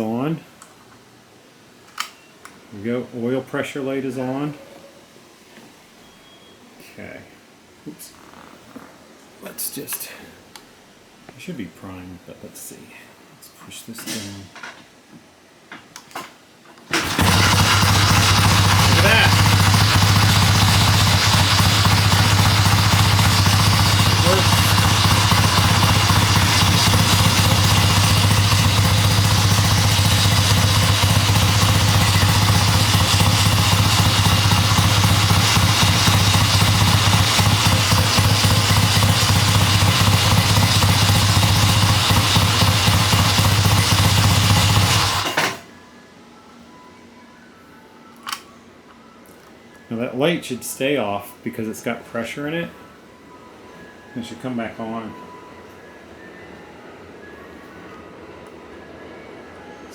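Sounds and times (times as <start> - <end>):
motorcycle engine running: 17.0 - 45.7.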